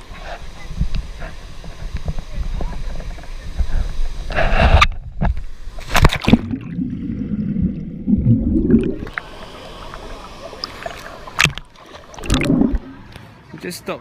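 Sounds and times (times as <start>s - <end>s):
water splashing and sloshing: 5.2s - 13.5s.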